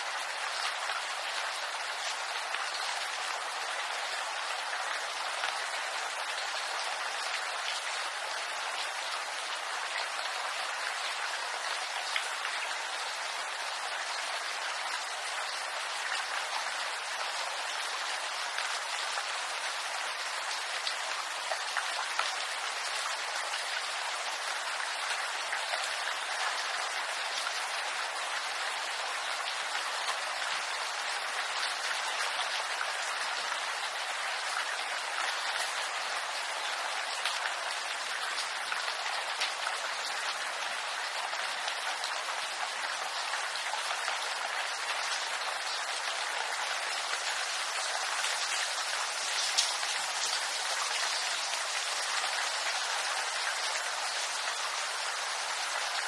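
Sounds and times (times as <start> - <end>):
steady rainfall hiss: 0.0 - 56.0
raindrops ticking on leaves: 33.8 - 56.0.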